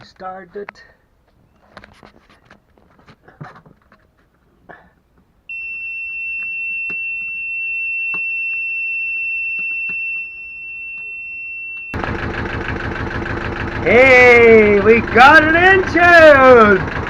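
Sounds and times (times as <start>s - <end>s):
high-pitched warning buzzer: 5.5s - 12.0s.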